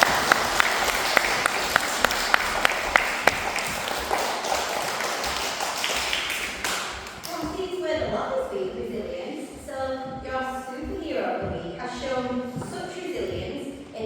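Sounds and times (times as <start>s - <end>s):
audience applauding: 0.0s - 7.3s
loud claps: 0.0s - 7.5s.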